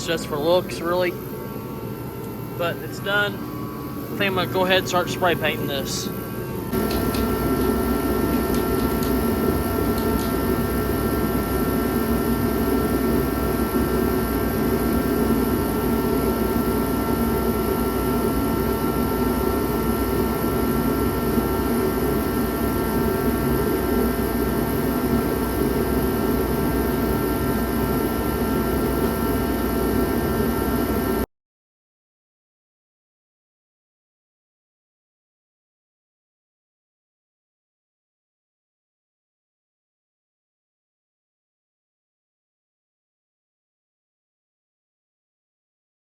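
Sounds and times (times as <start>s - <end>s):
heater blowing with low hum: 0.0s - 31.3s.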